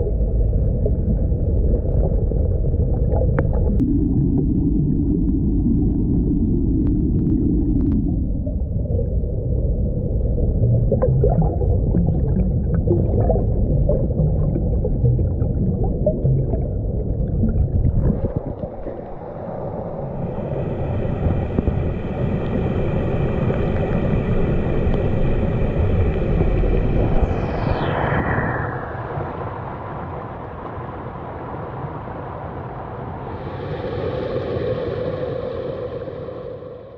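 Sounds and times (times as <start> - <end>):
muffled underwater river rumble: 0.0 - 36.9.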